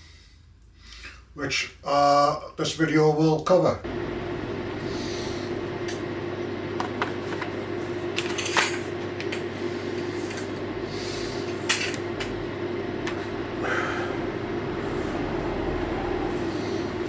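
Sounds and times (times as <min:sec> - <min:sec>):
steady low hum: 0:03.8 - 0:17.0.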